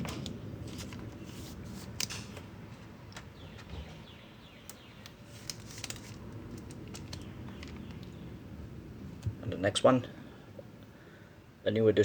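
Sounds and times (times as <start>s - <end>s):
trading cards rustling: 0.0s - 2.5s, 5.0s - 8.0s
low steady hum: 0.0s - 12.0s.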